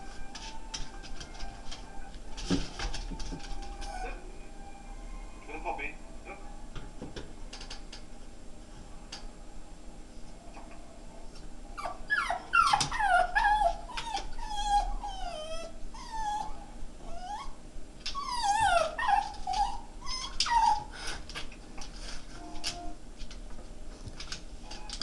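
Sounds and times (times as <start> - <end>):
dog whining and whimpering: 3.2 - 4.4, 11.8 - 21.2.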